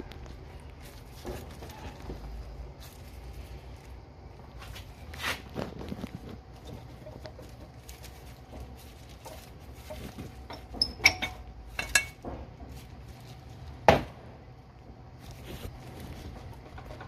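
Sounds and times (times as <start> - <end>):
metal tools knocking and tapping: 9.9 - 12.5.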